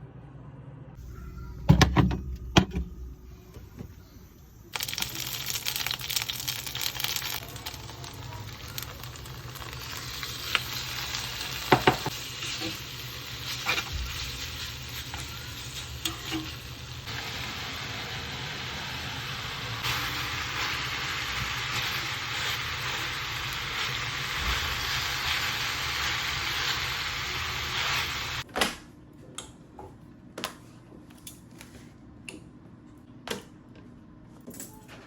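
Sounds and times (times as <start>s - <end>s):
food sizzling in a pan: 4.7s - 28.4s.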